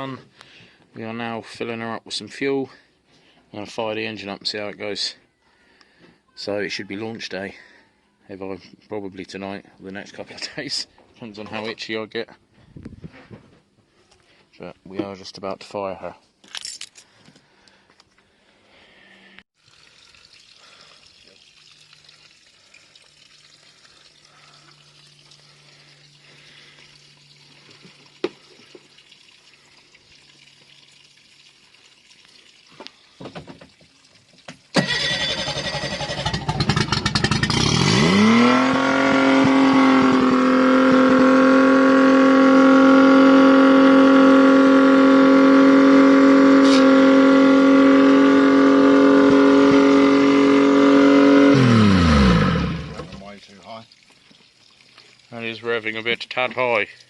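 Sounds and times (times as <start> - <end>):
short starting noises: 34.7 - 53.2
outboard motor idling fast: 34.8 - 53.2.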